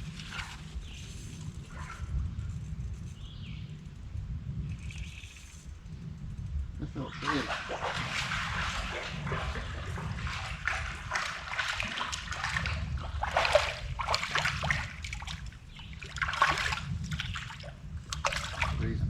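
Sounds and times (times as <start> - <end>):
stream trickling: 6.8 - 19.0
fish splashing in water: 7.1 - 18.8.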